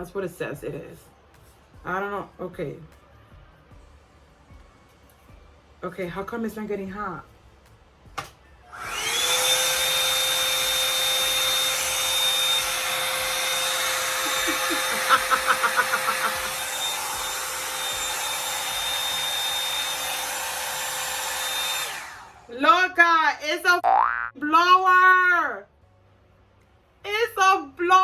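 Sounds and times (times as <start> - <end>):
hot-air brush motor whining: 8.6 - 22.8.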